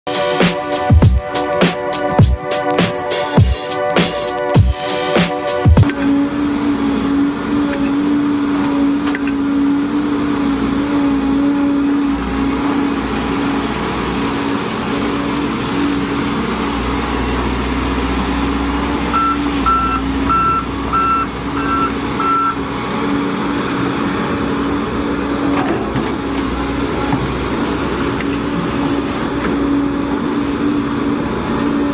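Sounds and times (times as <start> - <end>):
excavator diesel engine drone: 0.1 - 31.9
backup alarm beeping: 19.1 - 22.6.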